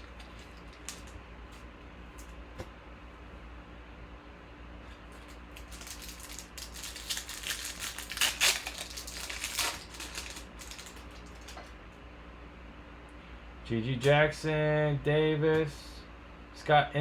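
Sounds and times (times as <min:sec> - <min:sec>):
foil pack crinkling: 0:00.0 - 0:01.7, 0:05.0 - 0:11.8.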